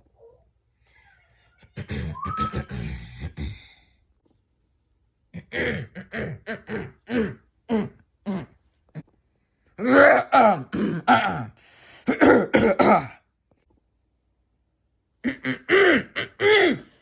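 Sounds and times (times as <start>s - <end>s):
person coughing: 1.7s - 3.7s, 10.6s - 13.2s, 15.3s - 17.0s
brief rising squeak: 2.2s - 2.7s.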